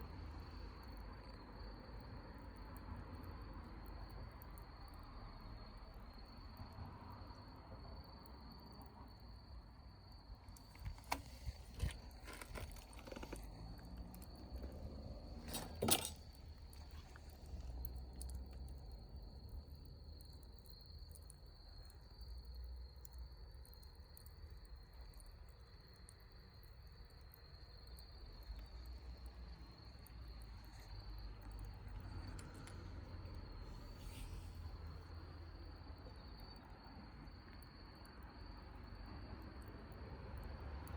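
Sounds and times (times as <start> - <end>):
crickets trilling: 0.0 - 40.9
sharp clicks and knocks: 10.6 - 14.8, 15.4 - 17.2.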